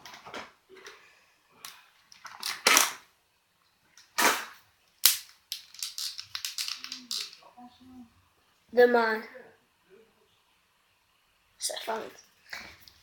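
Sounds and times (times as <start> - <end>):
sharp snap: 4.2 - 5.3
small clicks and crinkles: 4.9 - 7.5.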